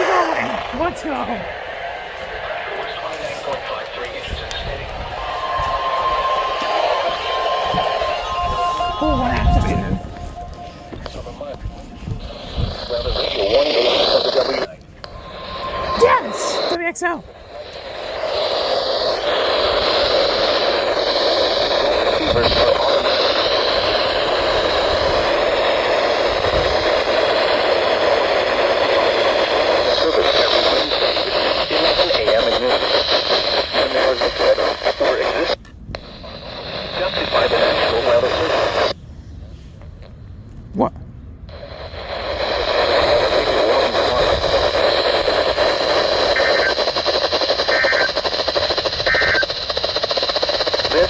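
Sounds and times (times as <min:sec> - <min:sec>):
radio static hiss: 0:00.0 - 0:39.0, 0:41.5 - 0:51.0
thin high whine: 0:00.0 - 0:39.0, 0:41.5 - 0:51.0
short beeps: 0:05.2 - 0:12.9, 0:15.1 - 0:17.2.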